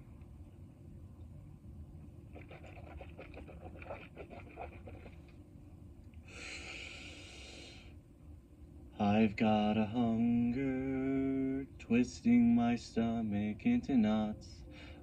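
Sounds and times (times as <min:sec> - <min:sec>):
faint low hum: 0:00.0 - 0:15.0
breathy hiss: 0:06.2 - 0:08.0.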